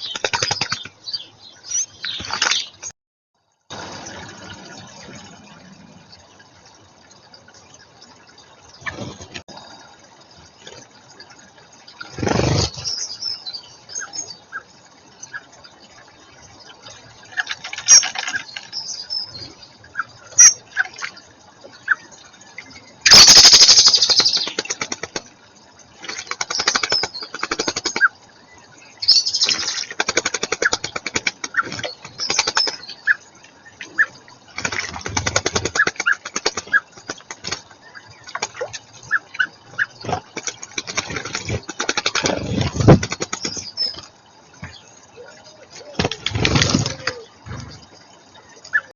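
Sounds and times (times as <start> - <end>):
birds fluttering wings: 0.0 - 1.0, 12.0 - 12.9, 17.4 - 18.8, 23.1 - 28.2, 29.4 - 32.9, 34.4 - 39.0, 39.8 - 44.1, 45.8 - 47.8.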